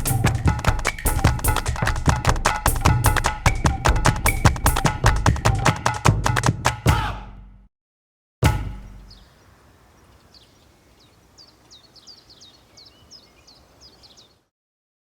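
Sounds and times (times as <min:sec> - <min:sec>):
deep thump: 0:08.4 - 0:09.2
small bird chirping: 0:08.9 - 0:14.5.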